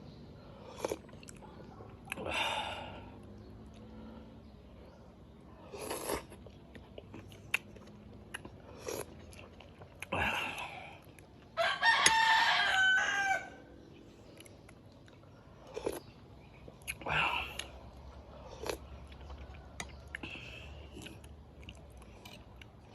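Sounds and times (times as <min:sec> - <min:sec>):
soft eating sounds: 0:00.0 - 0:12.5, 0:13.4 - 0:22.9
rooster crowing: 0:11.6 - 0:13.7.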